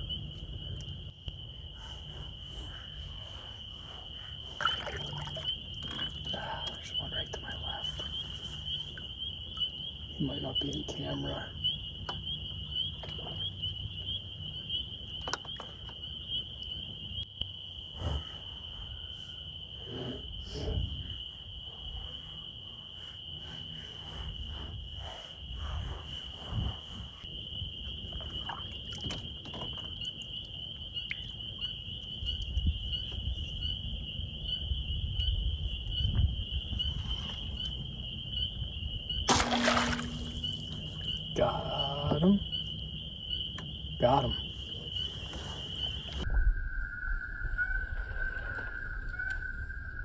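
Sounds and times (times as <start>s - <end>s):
crickets and insects trilling: 0.0s - 50.0s
low wind: 0.0s - 50.0s
water noise: 1.7s - 9.6s, 39.3s - 42.4s
arrow shot into water: 39.3s - 40.8s.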